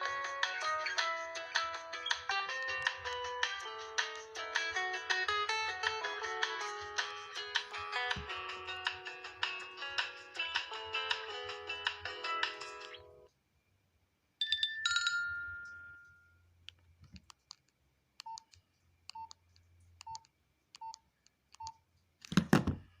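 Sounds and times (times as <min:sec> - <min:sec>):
phone ringtone: 0:14.4 - 0:16.3
thump of phone being handled: 0:22.3 - 0:22.9.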